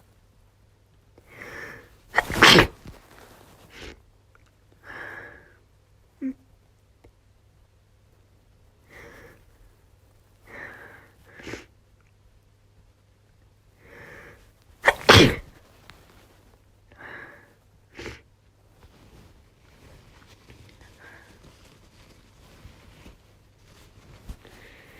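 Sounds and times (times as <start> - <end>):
woman breathing: 1.3 - 2.4, 16.9 - 17.6
woman sneezing: 2.2 - 3.0, 14.8 - 15.5.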